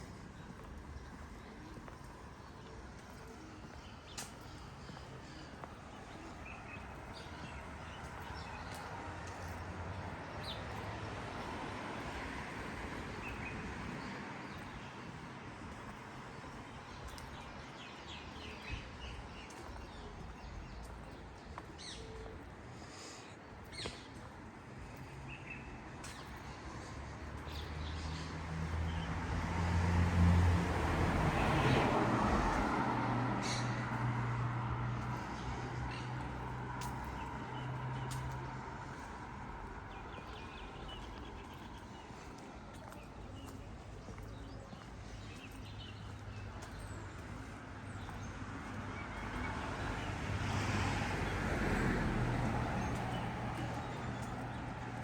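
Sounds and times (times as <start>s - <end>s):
vehicle passing: 26.0s - 55.0s
small birds chirping: 34.9s - 50.2s.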